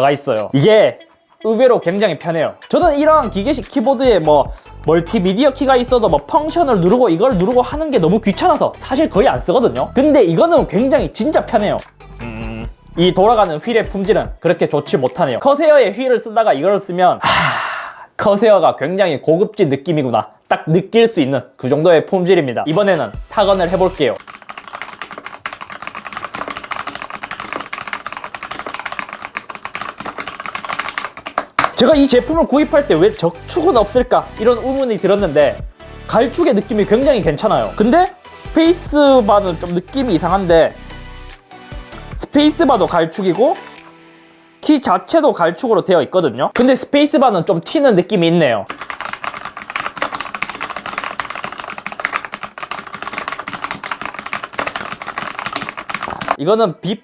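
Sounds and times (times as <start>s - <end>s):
rapid mechanical keyboard typing: 23.7s - 32.1s, 48.7s - 56.4s.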